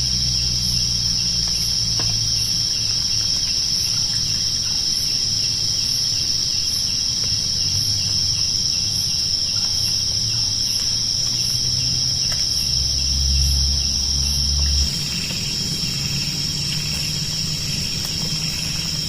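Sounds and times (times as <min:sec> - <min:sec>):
insects chirring: 0:00.0 - 0:19.0
low rumble: 0:12.5 - 0:19.0.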